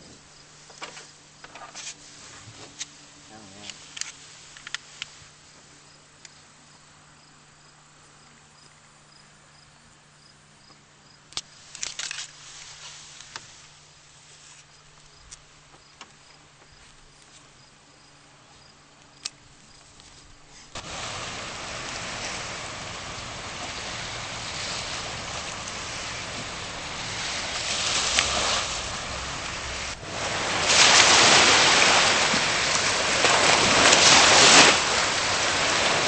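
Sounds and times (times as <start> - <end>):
faint hum and hiss: 0.0 - 36.0
wind and water on microphone: 20.7 - 36.0.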